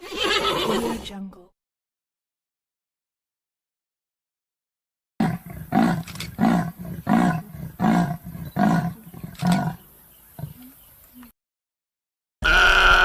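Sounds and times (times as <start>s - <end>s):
large animal deep calls: 5.2s - 9.8s, 12.4s - 13.0s.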